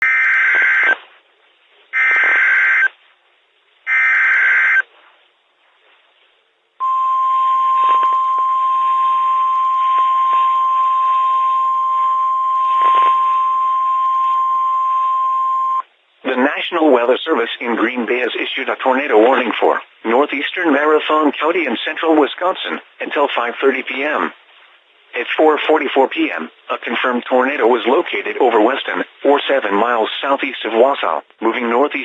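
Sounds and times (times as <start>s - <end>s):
faint radio hiss: 0.0s - 32.0s
steady warning alarm tone: 2.0s - 2.9s, 3.9s - 4.8s, 6.8s - 15.8s.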